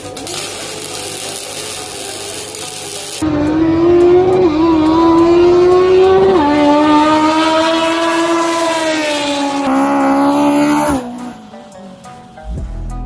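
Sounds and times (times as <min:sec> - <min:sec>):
car engine at high revs: 0:03.2 - 0:11.6.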